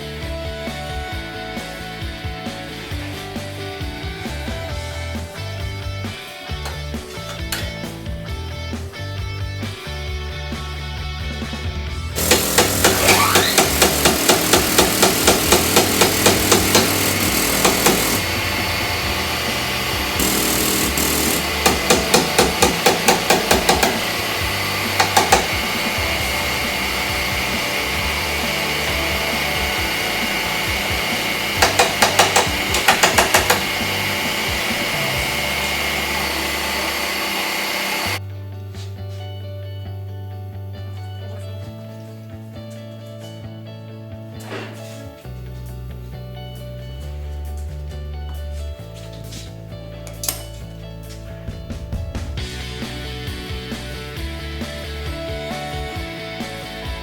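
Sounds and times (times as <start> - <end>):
hammer on car body metal: 20.2 - 24.1, 24.9 - 25.9, 31.6 - 33.8.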